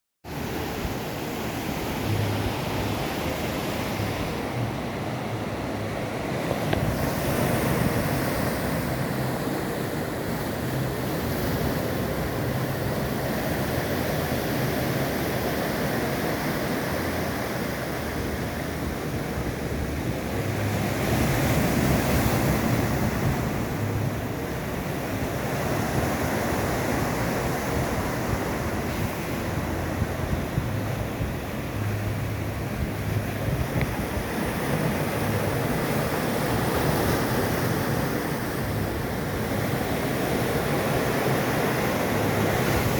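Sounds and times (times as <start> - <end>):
ocean waves breaking: 0.3 - 42.9
wind buffeting microphone: 18.1 - 42.9.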